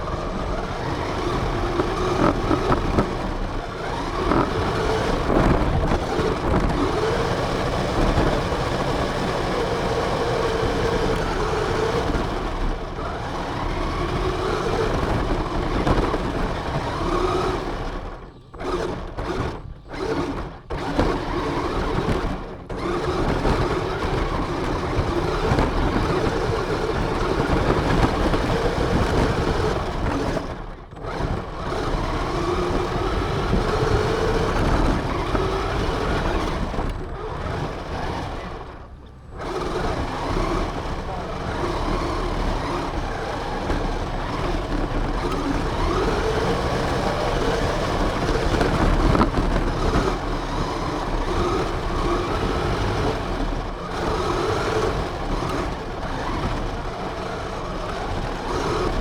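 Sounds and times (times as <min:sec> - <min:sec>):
rc car motor whine: 0:00.0 - 0:59.0
wheels rumbling and rattling: 0:00.0 - 0:59.0.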